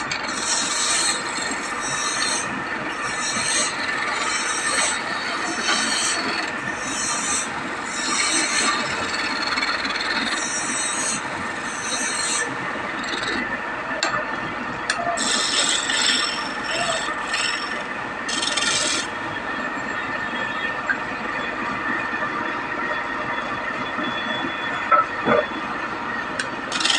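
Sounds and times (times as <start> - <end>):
tool rasping on wood: 3.1 - 12.5.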